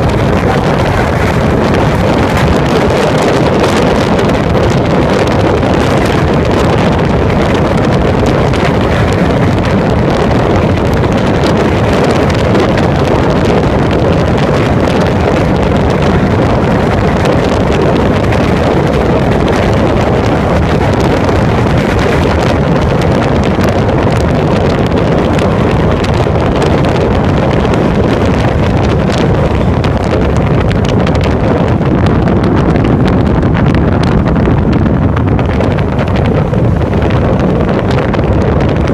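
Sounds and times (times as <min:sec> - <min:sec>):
train rushing and rumbling: 0:00.0 - 0:38.9
wind buffeting a microphone: 0:00.0 - 0:38.9.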